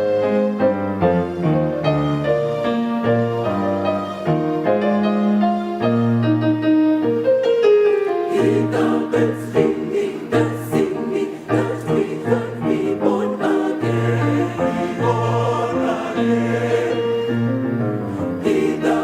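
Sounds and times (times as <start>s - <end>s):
choir singing: 8.0s - 19.0s.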